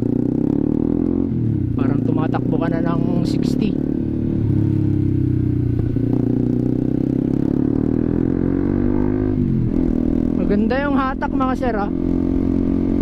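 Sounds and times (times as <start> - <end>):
motorcycle engine exhaust note: 0.0 - 13.0.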